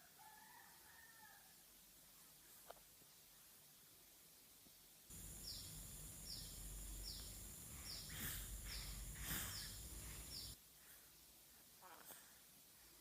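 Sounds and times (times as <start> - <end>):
breathy snorts: 7.7 - 10.6
baby snoring squeakily: 7.8 - 9.9.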